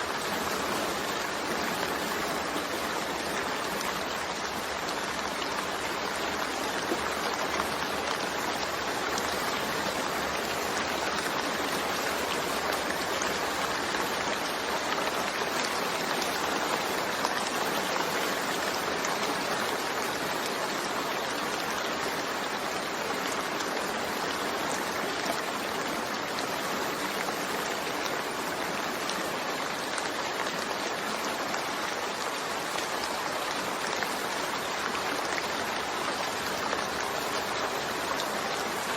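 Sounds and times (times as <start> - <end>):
steady rain hiss: 0.0 - 38.9.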